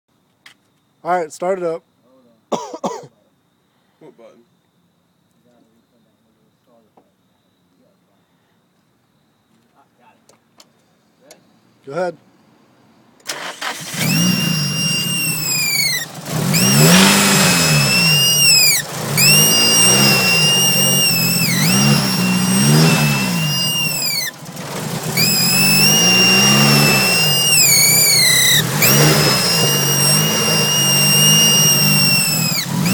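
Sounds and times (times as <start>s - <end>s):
car engine revving: 13.3s - 32.9s
high-pitched whine: 14.1s - 32.9s.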